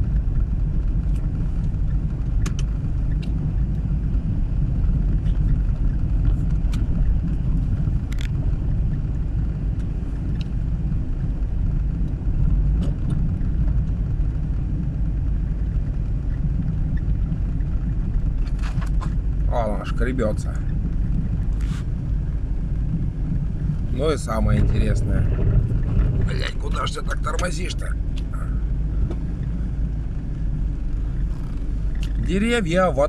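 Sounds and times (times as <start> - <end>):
tyres and engine rumble: 0.0 - 33.0.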